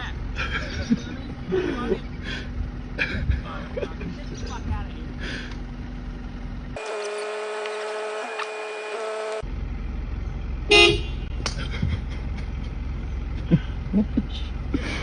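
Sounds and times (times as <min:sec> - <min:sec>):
low rumble: 0:00.0 - 0:06.8
horn blasts: 0:06.8 - 0:09.4, 0:10.7 - 0:11.3.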